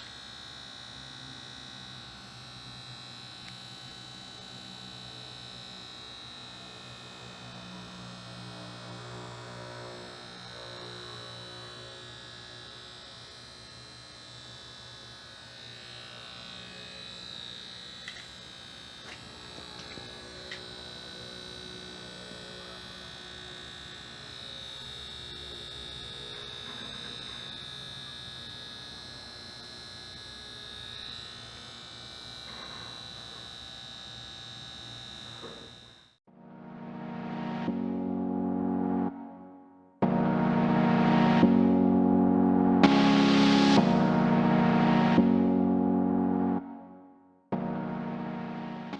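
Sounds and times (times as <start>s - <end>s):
high-pitched electrical whine: 0.0s - 48.9s.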